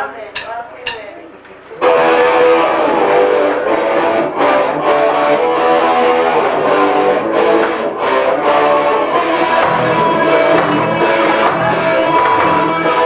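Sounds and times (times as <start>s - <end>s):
electric guitar strumming chords: 1.8s - 13.0s.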